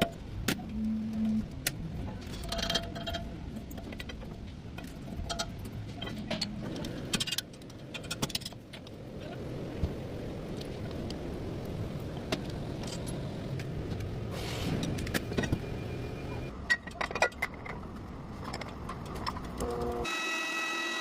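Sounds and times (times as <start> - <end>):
metallic clinks and rattles: 2.2 - 8.6.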